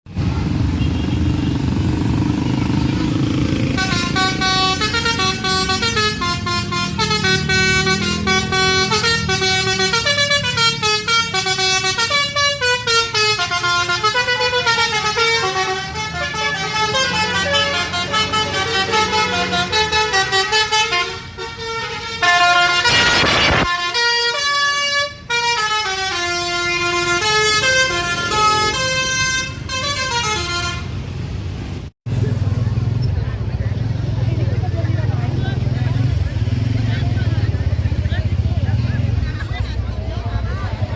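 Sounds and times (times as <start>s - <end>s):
bus engine running: 0.1s - 40.9s
bus horn playing a tune: 2.8s - 31.2s.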